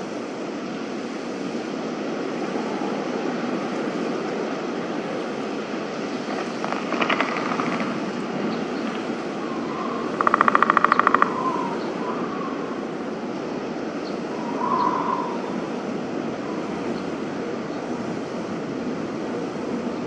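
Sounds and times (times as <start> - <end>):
wind hissing: 0.0 - 20.0
rapid pulsing: 6.2 - 9.3.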